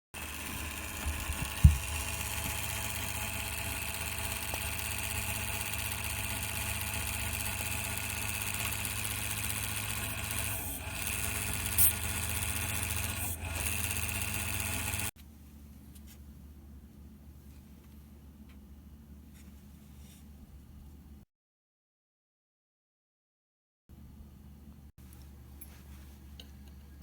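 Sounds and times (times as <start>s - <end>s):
cooling fan drone and whine: 0.2s - 21.2s.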